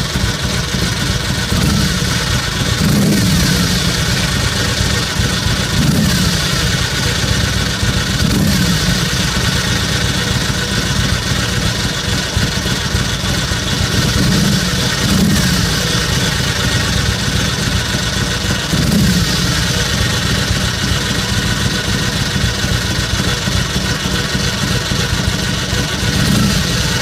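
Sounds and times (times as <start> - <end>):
engine running: 0.0 - 27.0.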